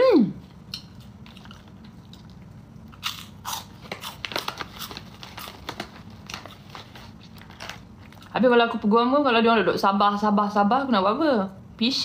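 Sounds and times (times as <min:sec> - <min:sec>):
biscuit crunching and chewing: 0:00.6 - 0:08.3.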